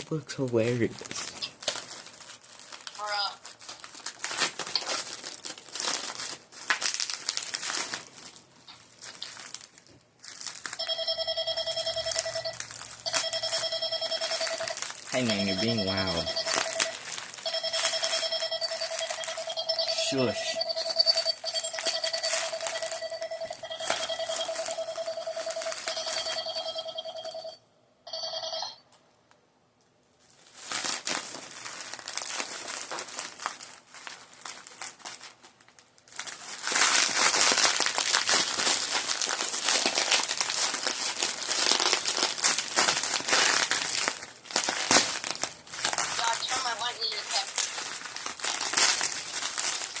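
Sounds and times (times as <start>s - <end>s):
plastic packaging crinkling: 0.0s - 27.5s, 30.1s - 50.0s
steady pitched tone: 10.8s - 27.6s.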